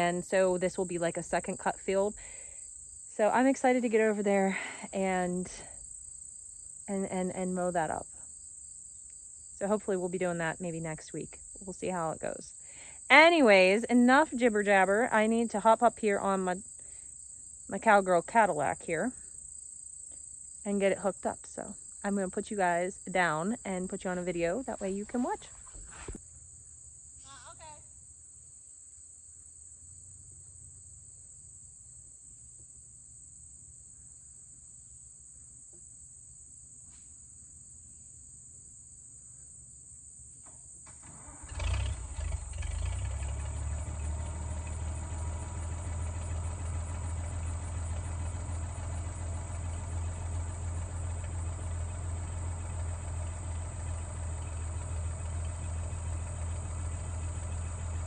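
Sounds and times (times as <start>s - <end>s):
insects chirping: 0.0s - 58.0s
tractor engine starting and idling: 40.4s - 58.0s.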